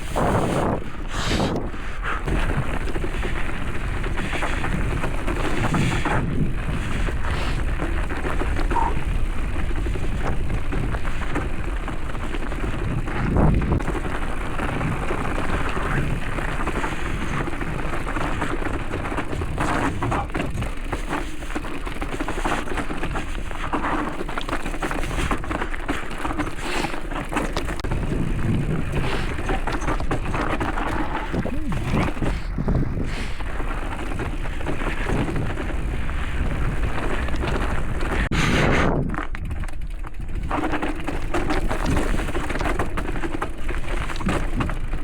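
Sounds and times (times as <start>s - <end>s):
wind on microphone: 0.0s - 20.6s, 27.8s - 39.6s
bike rattling and clicking: 0.0s - 45.0s
bike tyres rumbling: 0.0s - 45.0s.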